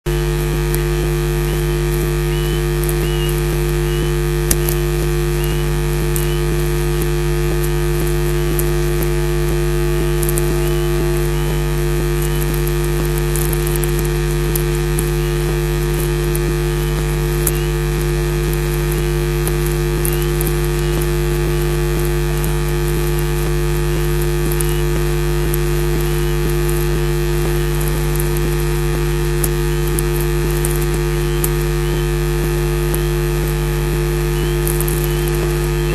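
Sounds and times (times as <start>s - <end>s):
electrical hiss and hum: 0.0s - 35.9s
osprey calling: 1.3s - 15.6s, 16.4s - 27.1s, 34.0s - 35.9s.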